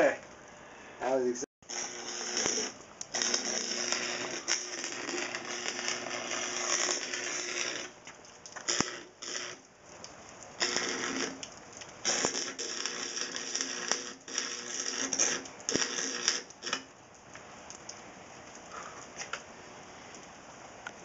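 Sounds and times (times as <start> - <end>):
welder hum: 1.6 - 8.0, 8.6 - 9.7, 10.6 - 11.4, 12.0 - 16.8
arc welder crackling and sizzling: 1.6 - 19.5.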